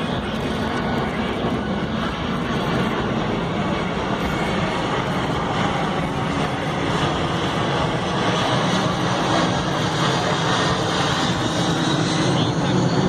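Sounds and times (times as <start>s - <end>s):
aircraft engines in flight: 0.0s - 13.0s.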